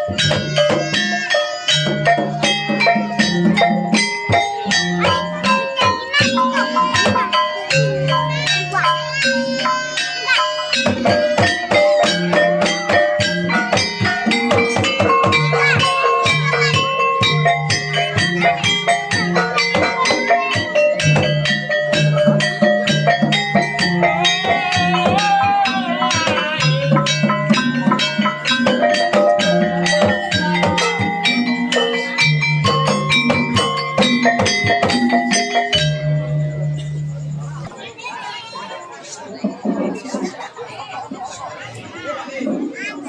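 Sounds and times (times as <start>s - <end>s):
wavering melody line: 0.0s - 40.1s
ringing metal-keyed notes: 0.0s - 42.3s
fast hand drumming: 10.4s - 36.6s.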